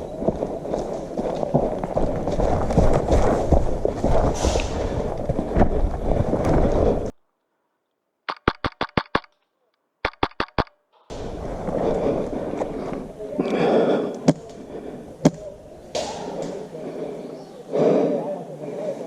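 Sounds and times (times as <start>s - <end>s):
heavy rustling movement: 0.0s - 7.2s
airsoft rifle bursts: 8.3s - 9.4s, 10.0s - 10.8s.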